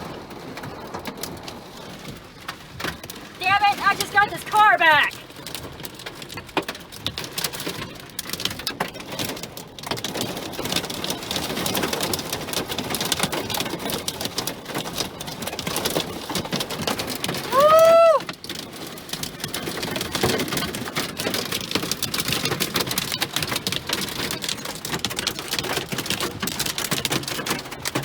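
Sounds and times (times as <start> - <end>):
hail and rain pelting down: 0.0 - 28.0
loud cry: 17.5 - 18.2.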